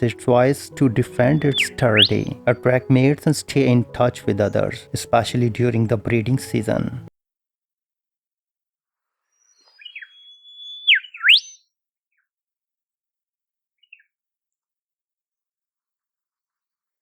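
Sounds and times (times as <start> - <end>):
bird whistling song: 1.2 - 2.4, 9.4 - 11.7.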